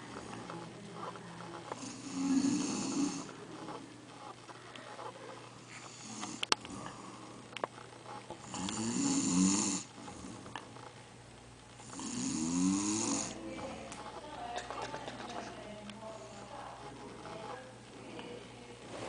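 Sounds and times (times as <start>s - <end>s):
person snoring: 1.8s - 3.3s, 8.4s - 10.4s, 11.8s - 13.4s.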